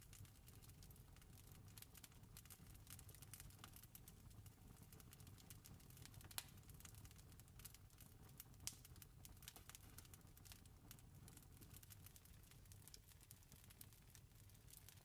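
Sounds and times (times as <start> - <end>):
wood fire crackling: 0.0 - 15.0
sharp pops of fire: 6.0 - 6.8, 8.6 - 10.1.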